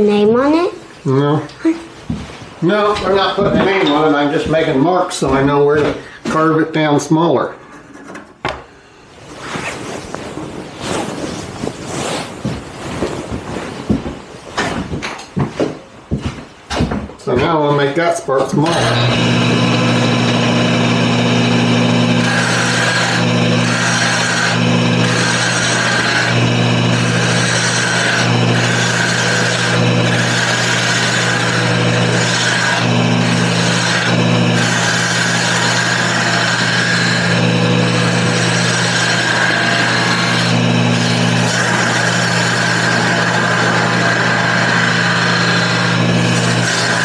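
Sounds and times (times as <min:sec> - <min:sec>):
turning tool scraping wood: 0:07.5 - 0:08.5, 0:18.6 - 0:47.0
wood lathe running: 0:18.6 - 0:47.0.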